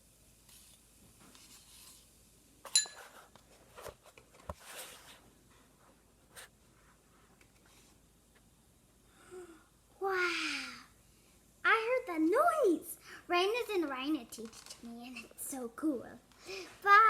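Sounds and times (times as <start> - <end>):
sharp ringing clink: 2.7 - 3.0
light clicks and rustles: 13.9 - 15.4.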